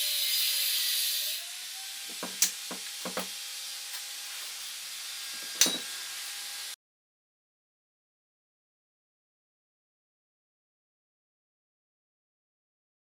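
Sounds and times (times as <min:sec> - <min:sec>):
air hissing: 0:01.1 - 0:06.8
sharp knocks: 0:02.1 - 0:03.3.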